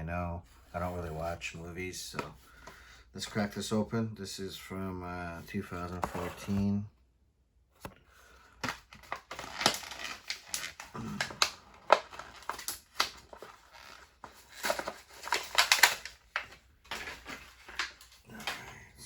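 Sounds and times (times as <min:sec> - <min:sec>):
plastic blister crinkling: 0:08.6 - 0:18.7
cardboard tearing: 0:08.8 - 0:18.0.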